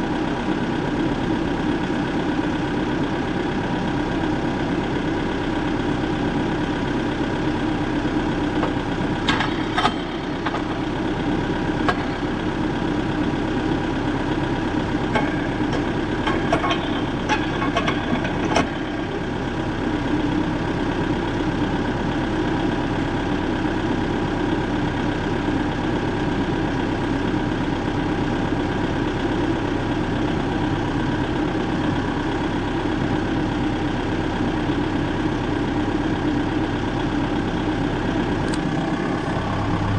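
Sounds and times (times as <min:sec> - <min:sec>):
engine running: 0:00.0 - 0:39.9
sharp clicks and knocks: 0:08.6 - 0:10.8, 0:15.2 - 0:19.2.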